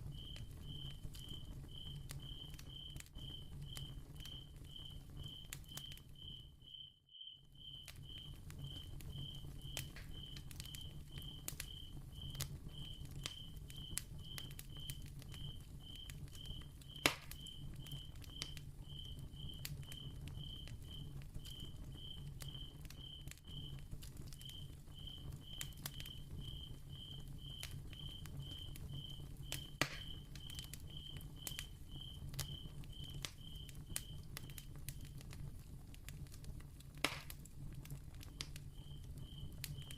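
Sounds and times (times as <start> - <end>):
flame crackling and popping: 0.0 - 39.9
cricket chirping: 0.1 - 23.8, 24.4 - 34.6, 38.7 - 39.9.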